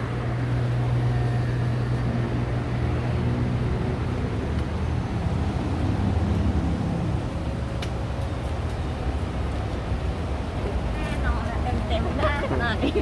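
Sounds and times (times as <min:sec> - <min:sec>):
large engine droning: 0:00.0 - 0:13.0.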